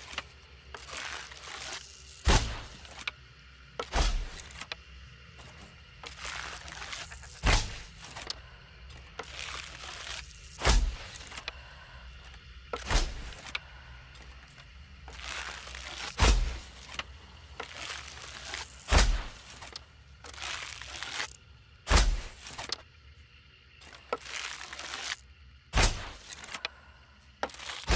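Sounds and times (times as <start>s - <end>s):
bow shots: 2.2s - 2.8s, 3.8s - 4.7s, 7.4s - 8.0s, 10.6s - 11.2s, 12.8s - 13.5s, 16.1s - 16.7s, 18.8s - 19.5s, 21.9s - 22.5s, 25.7s - 26.4s.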